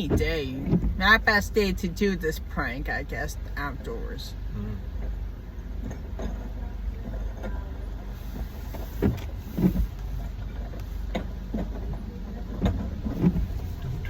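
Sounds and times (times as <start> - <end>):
car engine idling: 0.0 - 14.0
soft low thumps: 11.1 - 14.0.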